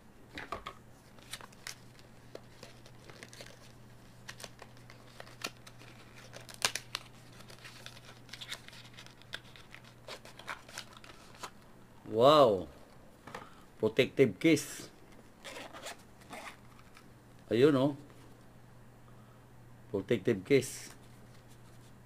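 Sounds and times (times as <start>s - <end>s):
faint low hum: 0.0s - 22.0s
packaging rustling and tearing: 1.0s - 11.6s, 15.4s - 17.0s.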